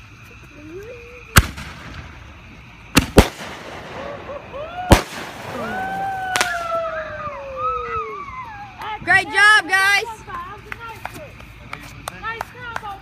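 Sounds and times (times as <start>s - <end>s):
fireworks bangs: 1.3s - 10.8s.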